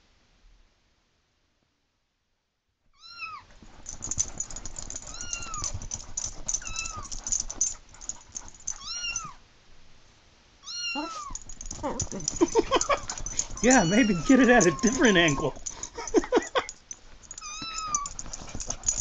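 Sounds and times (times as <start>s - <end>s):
clatter of clicks and scuffling: 3.6s - 9.3s, 11.4s - 19.0s
recorded cat meows ringtone: 10.7s - 11.4s, 13.6s - 15.6s.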